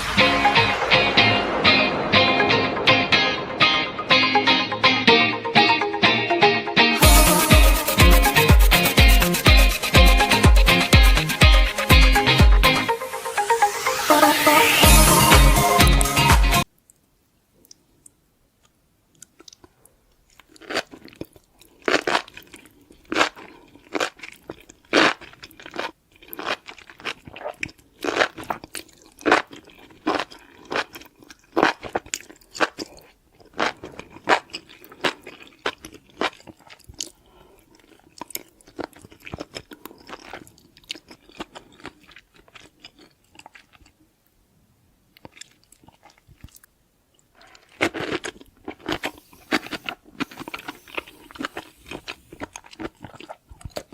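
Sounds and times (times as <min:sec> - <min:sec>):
crisp crunching and chewing: 0:19.1 - 0:44.1, 0:45.1 - 0:53.9.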